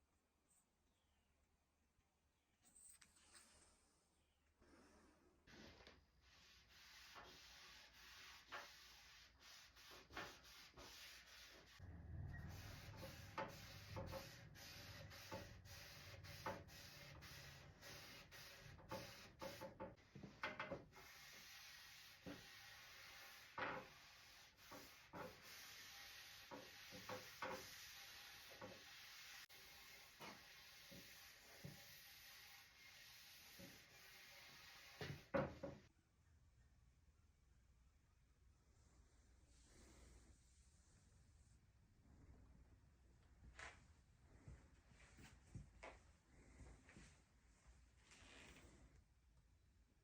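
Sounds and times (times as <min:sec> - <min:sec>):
wood being sanded by hand: 0:12.6 - 0:19.6, 0:21.0 - 0:35.3.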